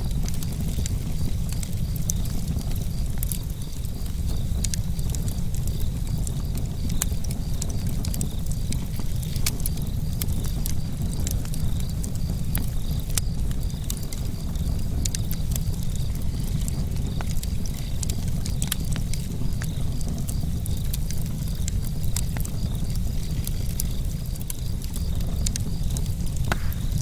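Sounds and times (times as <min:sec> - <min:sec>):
campfire crackling and popping: 0:00.0 - 0:27.0
low fire rumble: 0:00.0 - 0:27.0.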